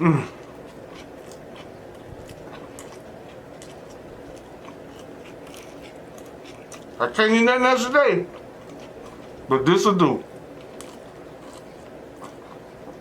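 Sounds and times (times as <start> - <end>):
person humming appreciatively: 0.0 - 0.4
person chewing: 0.0 - 7.0, 8.2 - 9.5, 10.3 - 13.0.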